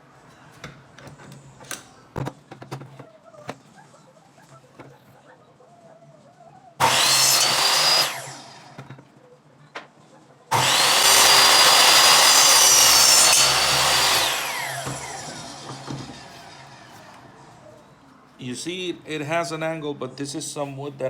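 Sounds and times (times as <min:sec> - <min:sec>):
electric saw cutting wood: 0:06.8 - 0:08.9, 0:10.5 - 0:17.4.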